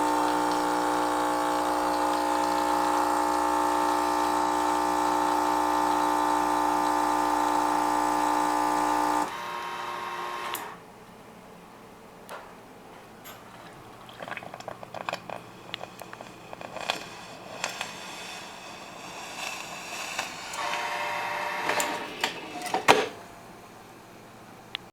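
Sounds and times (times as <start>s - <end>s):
appliance motor humming: 0.0s - 10.8s, 18.8s - 23.0s.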